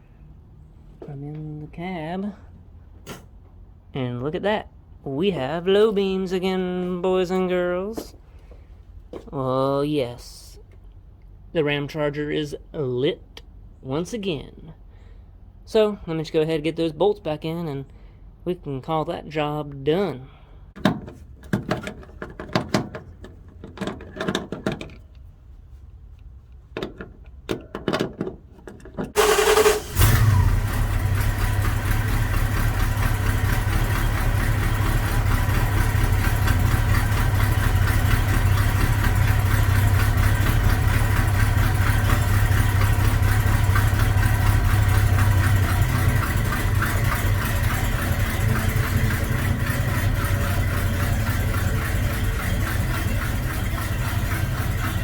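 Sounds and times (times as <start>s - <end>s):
starter cranking engine: 29.1s - 55.0s
engine idling rumble: 29.2s - 55.0s.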